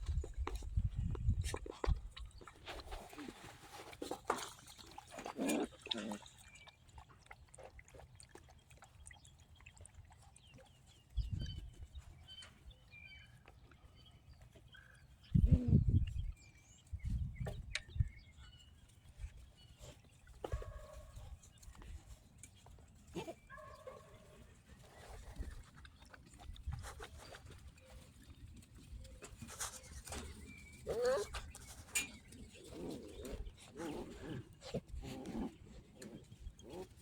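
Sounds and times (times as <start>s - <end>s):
puppies squeaking and grunting: 24.7s - 37.0s.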